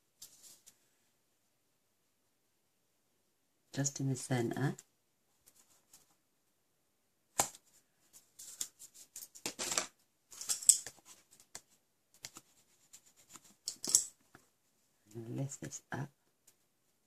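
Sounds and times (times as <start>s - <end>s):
tape and card crackling: 8.4s - 12.5s, 13.2s - 14.2s.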